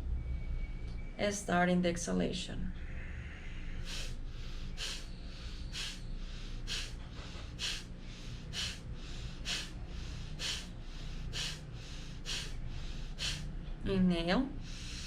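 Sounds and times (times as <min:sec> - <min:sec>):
low steady hum: 0:00.0 - 0:15.0
forceful nasal exhalations: 0:03.8 - 0:13.5.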